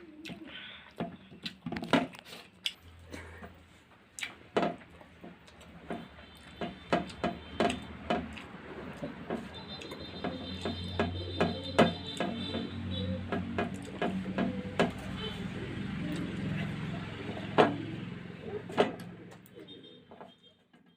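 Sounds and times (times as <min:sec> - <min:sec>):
person chewing and lip-smacking: 0:00.1 - 0:03.0, 0:04.1 - 0:04.5, 0:05.4 - 0:10.0.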